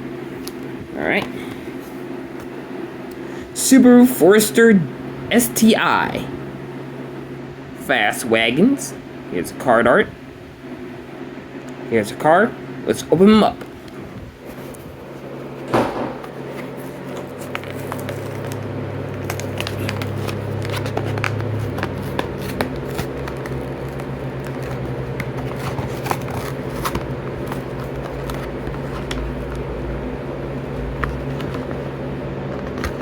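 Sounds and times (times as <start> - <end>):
steady low hum: 0.0 - 33.0
plastic packaging crinkling: 16.2 - 32.0.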